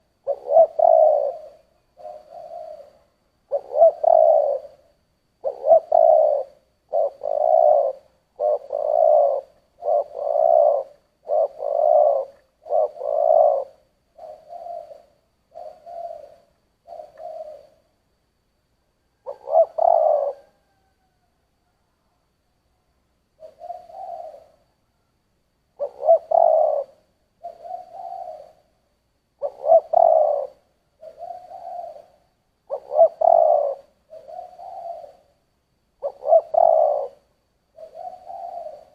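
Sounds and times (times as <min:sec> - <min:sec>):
dove cooing: 0:00.0 - 0:17.9, 0:19.1 - 0:22.1, 0:23.4 - 0:25.0, 0:25.7 - 0:35.4, 0:36.0 - 0:38.9.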